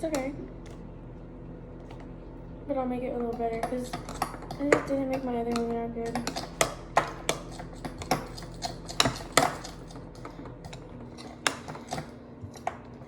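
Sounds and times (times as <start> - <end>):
utensil clinking against bowl: 3.2 - 12.9.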